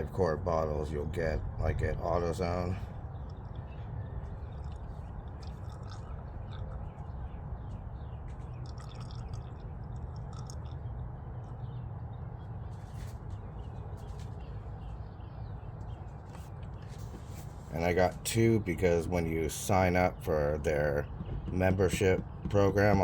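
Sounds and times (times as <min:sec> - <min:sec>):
low background rumble: 0:00.0 - 0:23.0
oil glugging and trickling: 0:02.8 - 0:11.8.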